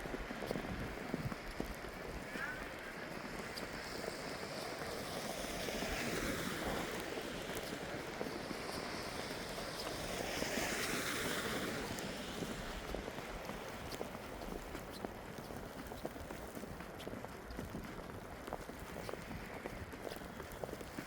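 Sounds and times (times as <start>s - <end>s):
footsteps crunching in snow: 0.0s - 21.0s
snowstorm rushing noise: 0.2s - 13.9s.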